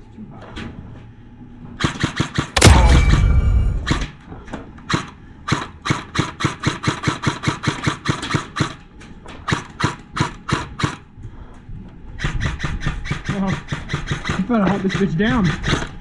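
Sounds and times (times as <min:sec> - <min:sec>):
airsoft gun shots: 0:02.0 - 0:04.1.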